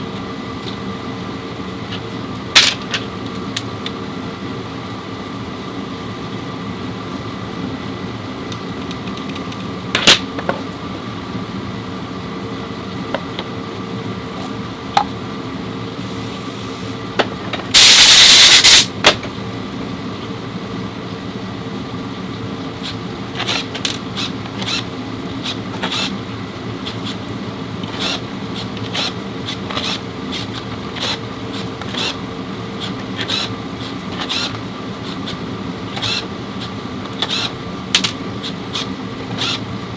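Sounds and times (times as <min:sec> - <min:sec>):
loud hiss: 0:16.0 - 0:17.0, 0:17.8 - 0:18.9.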